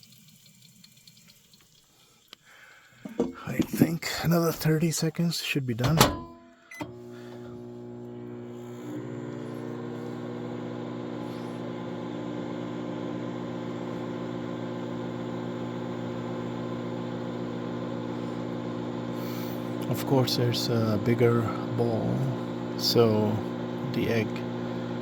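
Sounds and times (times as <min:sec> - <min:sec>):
microwave start click: 0:05.8 - 0:18.1
microwave oven humming: 0:05.8 - 0:25.0.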